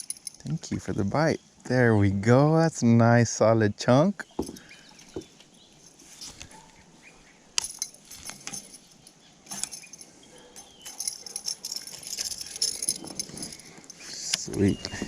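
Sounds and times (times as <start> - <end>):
lure blade and hooks rattling: 0.0 - 0.5, 7.6 - 14.7
metallic jingling of fishing tackle: 0.0 - 0.6, 4.3 - 6.6, 7.6 - 14.9.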